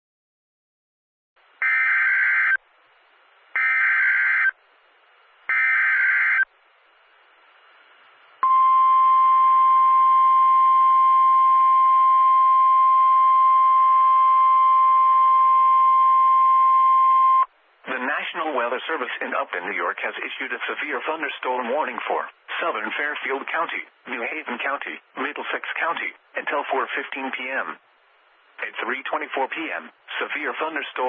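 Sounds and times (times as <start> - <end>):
steady single-pitched alarm tone: 1.6 - 2.6, 3.6 - 4.5, 5.5 - 6.5, 8.4 - 17.5.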